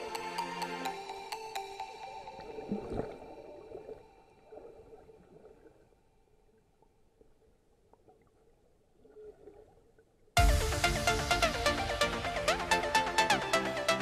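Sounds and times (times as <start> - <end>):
faint muffled water sloshing: 2.3 - 10.4.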